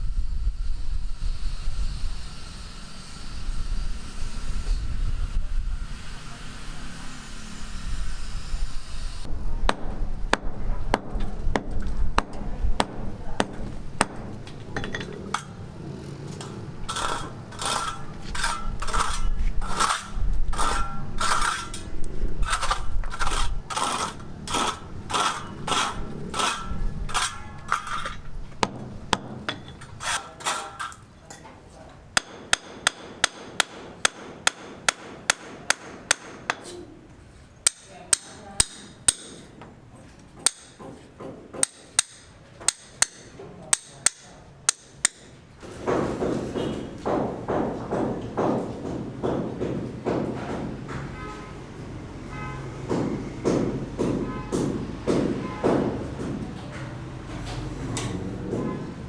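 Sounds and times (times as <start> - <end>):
low rumble: 9.3 - 29.5
hammer striking metal: 12.2 - 15.8, 16.4 - 31.0, 32.2 - 36.8, 37.6 - 39.5, 40.4 - 45.4.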